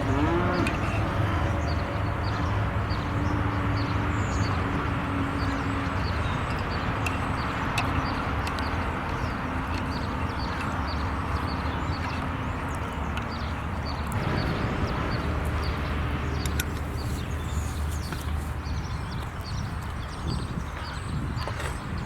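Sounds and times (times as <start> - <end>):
fire rumbling and crackling: 14.2 - 18.7.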